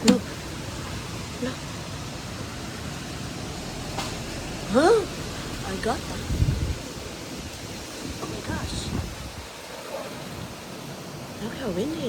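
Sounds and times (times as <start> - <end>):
low rumbles: 0.0 - 11.8
gusty wind buffeting microphone: 0.0 - 12.0.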